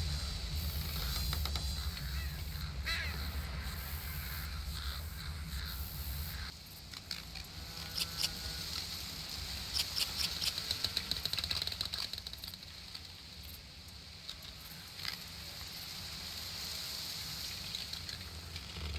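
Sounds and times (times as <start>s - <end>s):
low rumble: 0.0s - 6.5s.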